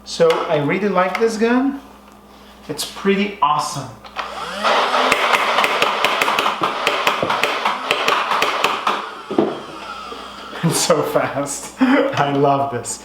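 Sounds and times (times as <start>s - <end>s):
motor hum: 4.1s - 11.0s.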